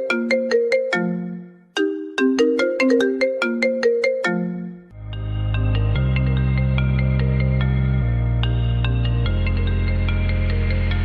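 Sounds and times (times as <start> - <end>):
phone ringtone melody: 0.0 - 7.6
ringtone tune with deep bass: 0.0 - 11.0.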